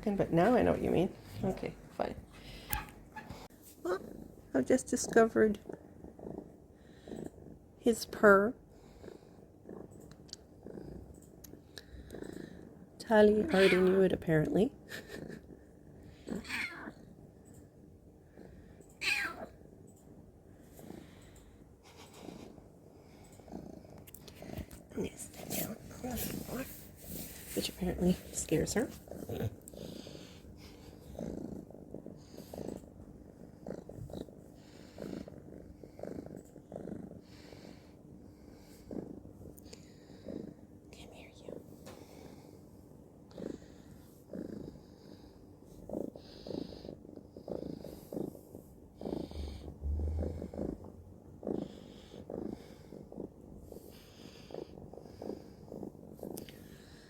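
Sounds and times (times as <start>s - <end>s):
cat purring: 0.0s - 57.0s
low rumble: 49.2s - 51.2s.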